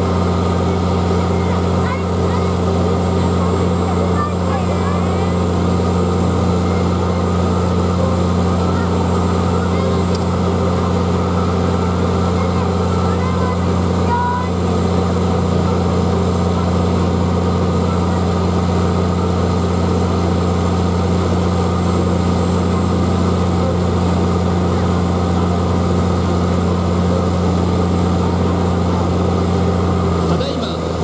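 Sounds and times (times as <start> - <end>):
fire truck diesel engine running: 0.0 - 31.0.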